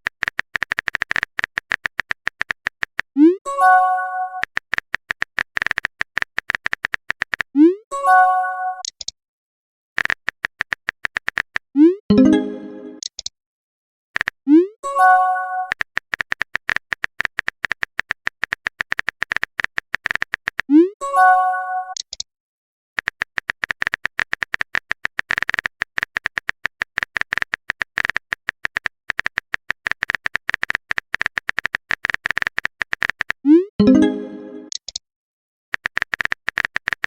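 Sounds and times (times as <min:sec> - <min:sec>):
rising notification chime: 0:12.1 - 0:13.0, 0:33.8 - 0:34.7.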